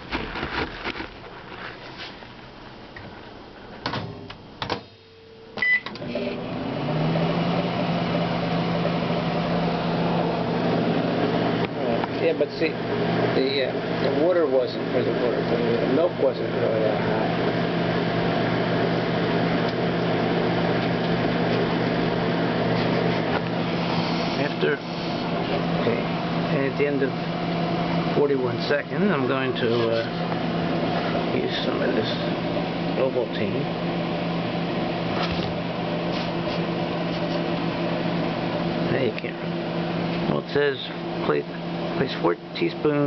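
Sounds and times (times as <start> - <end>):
microwave oven hum: 0.0 - 43.0
microwave keypad beep: 5.2 - 5.9.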